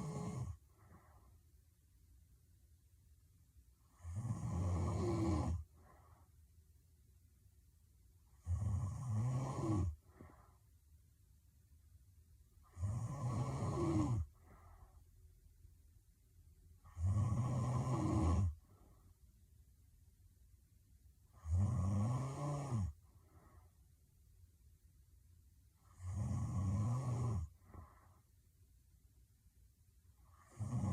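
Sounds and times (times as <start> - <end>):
woman snoring heavily: 0.0 - 0.6, 3.9 - 5.7, 8.4 - 10.3, 12.6 - 14.8, 16.9 - 18.6, 21.4 - 23.0, 25.9 - 27.9, 30.3 - 30.9
soft breath: 0.0 - 1.6, 5.6 - 6.6, 9.9 - 10.9, 14.2 - 15.4, 23.0 - 24.0, 27.5 - 28.5.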